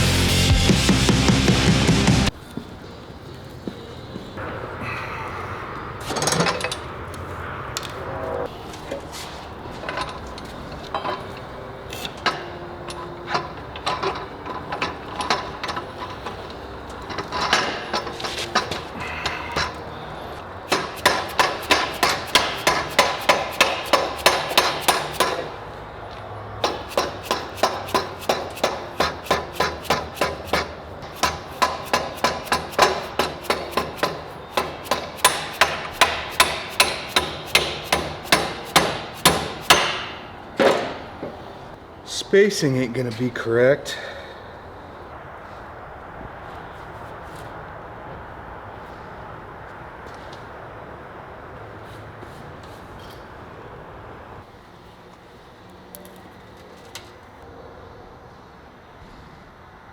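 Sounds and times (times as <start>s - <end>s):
hammer blows on metal: 20.7s - 25.6s, 26.6s - 41.4s.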